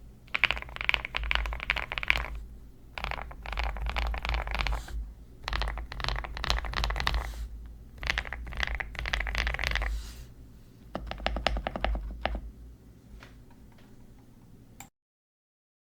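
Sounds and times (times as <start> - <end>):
mechanical keyboard typing: 0.3 - 2.4, 3.0 - 7.4, 8.0 - 10.0, 10.9 - 12.5.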